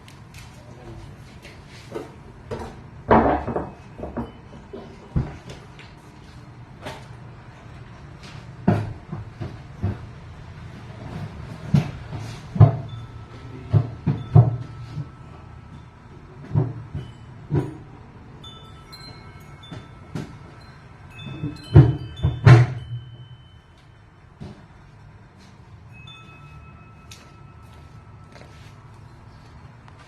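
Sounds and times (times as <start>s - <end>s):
knocks and clanks: 1.9s - 5.7s, 8.2s - 18.0s, 19.0s - 23.3s
thin ringing tones: 3.2s - 5.5s, 12.2s - 25.1s, 25.7s - 29.9s.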